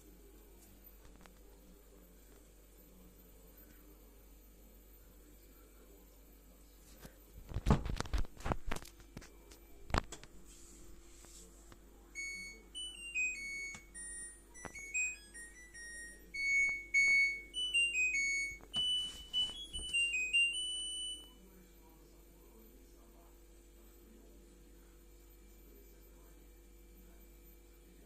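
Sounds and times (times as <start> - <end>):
washing machine beeping melody: 12.1 - 21.4.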